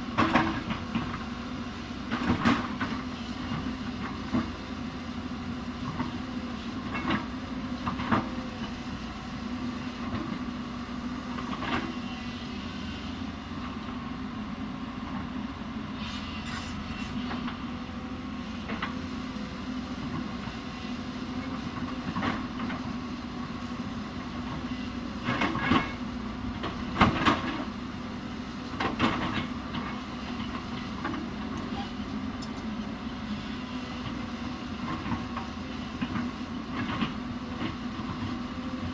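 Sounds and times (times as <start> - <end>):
excavator diesel engine running: 0.0 - 38.9
machine clanks and knocks: 32.0 - 32.8.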